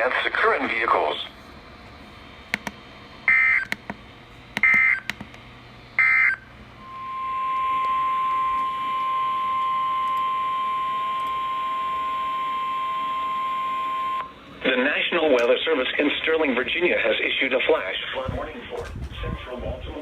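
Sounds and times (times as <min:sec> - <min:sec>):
single-pitch warning alarm tone: 0:03.3 - 0:03.7, 0:04.6 - 0:05.1, 0:06.0 - 0:14.4.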